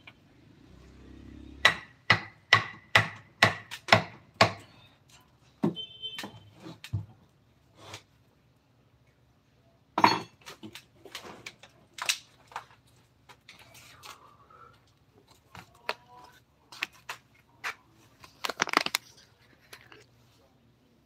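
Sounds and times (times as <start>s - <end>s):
hard objects knocking and clicking: 18.4s - 19.0s.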